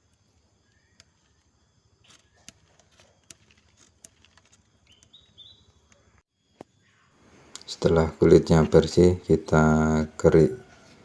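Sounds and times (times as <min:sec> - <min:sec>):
knife peeling bark: 0:00.0 - 0:06.1.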